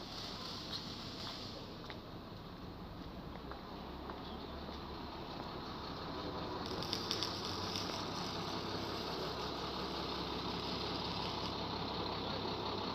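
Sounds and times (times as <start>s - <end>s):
high hiss: 0.0s - 1.9s, 6.6s - 12.0s
engine idling: 0.0s - 12.9s.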